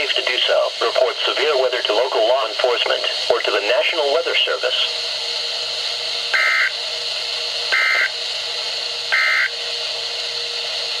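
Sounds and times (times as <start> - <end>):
steady radio hiss: 0.0 - 11.0
two-tone warbling data bursts: 6.4 - 6.7, 7.7 - 8.1, 9.1 - 9.5.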